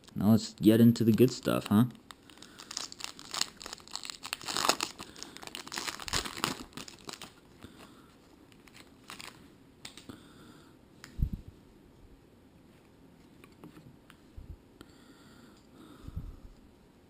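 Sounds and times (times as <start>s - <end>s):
wrapper tearing and crinkling: 1.2s - 7.4s, 8.6s - 10.0s.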